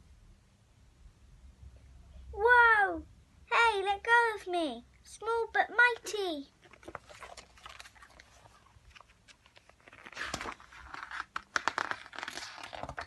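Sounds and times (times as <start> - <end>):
paper pages rustling: 6.6 - 13.0.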